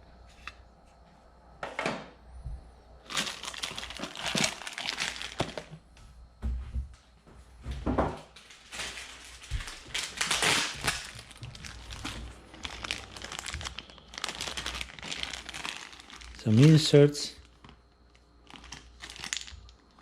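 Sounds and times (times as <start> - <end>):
packaging crinkling and rustling: 3.0 - 5.8, 8.4 - 20.0.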